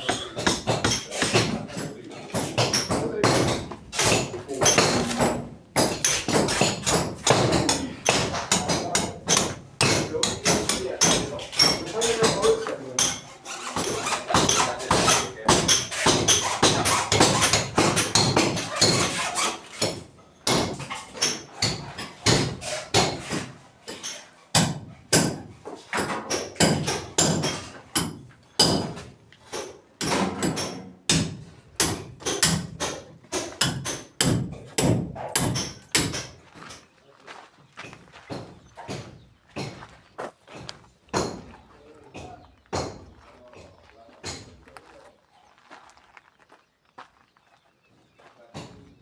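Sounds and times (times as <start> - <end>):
hammer blows: 0.0 - 21.0.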